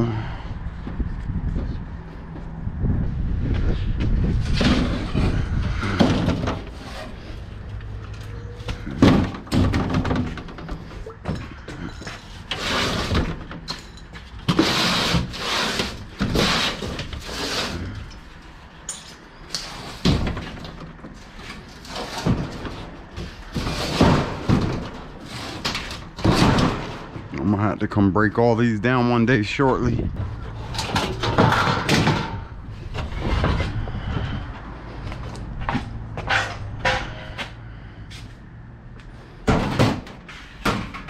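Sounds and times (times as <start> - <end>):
scrap metal clattering: 4.3 - 27.3, 30.3 - 33.8, 36.2 - 37.5.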